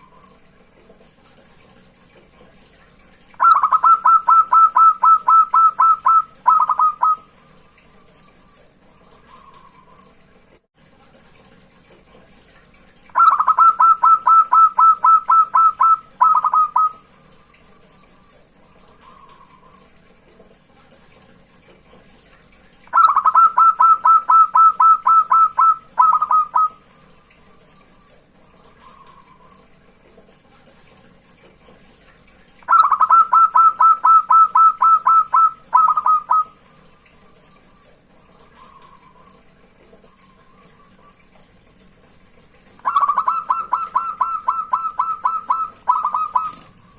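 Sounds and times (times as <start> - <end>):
dove cooing song: 3.4 - 7.6, 13.1 - 17.1, 22.9 - 26.8, 32.7 - 36.6, 42.8 - 46.8.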